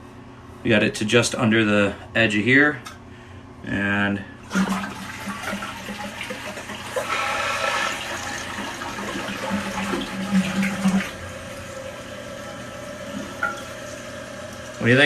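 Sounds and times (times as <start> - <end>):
toilet flushing: 4.4 - 15.0.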